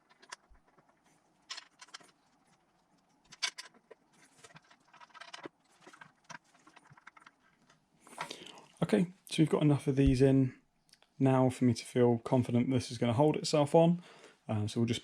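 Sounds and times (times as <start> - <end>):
gasket and bolts clicking and clinking: 0.0 - 8.3.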